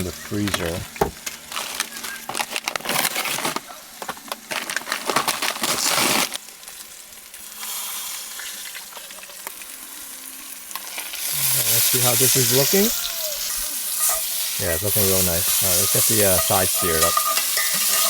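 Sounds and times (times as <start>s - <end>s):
packaging crinkling: 0.4s - 6.8s
steak sizzling in a pan: 6.4s - 18.0s.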